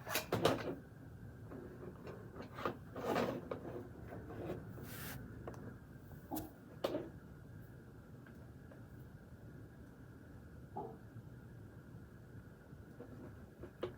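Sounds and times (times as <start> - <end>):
soft rubbing: 4.4 - 5.2.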